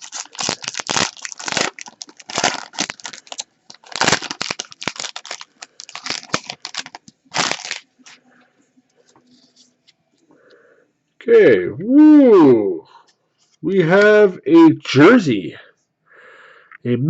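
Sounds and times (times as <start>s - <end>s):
foil wrapper tearing and crinkling: 0.0s - 8.2s.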